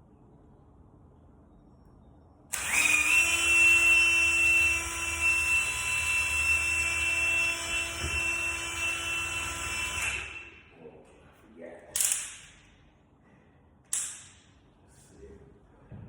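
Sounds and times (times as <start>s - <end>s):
electric drill whining: 2.5s - 10.5s.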